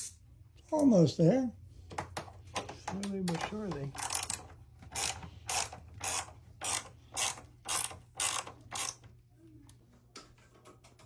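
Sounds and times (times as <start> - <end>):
hand ratchet clicking: 3.9 - 9.0.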